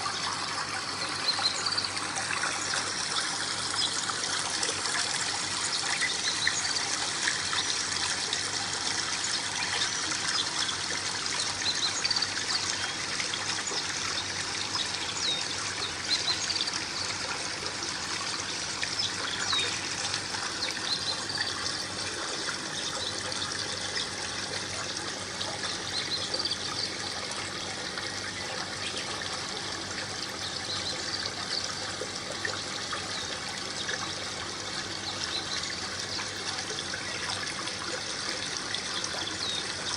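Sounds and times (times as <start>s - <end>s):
water trickling: 0.0s - 39.9s.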